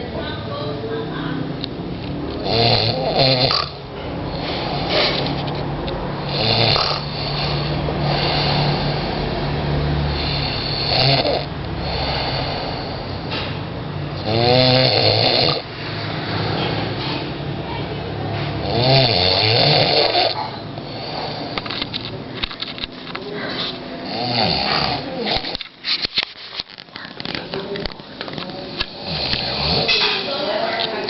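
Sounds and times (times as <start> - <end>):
loud snoring: 2.4 - 5.3, 6.2 - 13.4, 14.2 - 17.0, 18.6 - 21.6, 24.0 - 25.6, 28.6 - 30.0.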